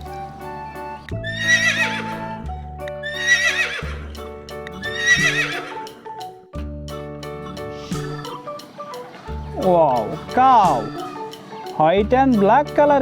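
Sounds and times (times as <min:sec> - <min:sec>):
background music: 0:00.0 - 0:13.0
horse whinnying: 0:01.2 - 0:02.4, 0:03.0 - 0:04.1, 0:04.8 - 0:05.8.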